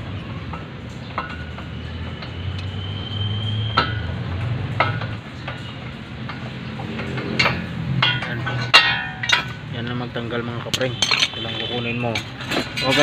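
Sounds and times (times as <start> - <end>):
hand tools tapping on steel: 0.4 - 2.8, 3.4 - 10.0, 10.6 - 13.0.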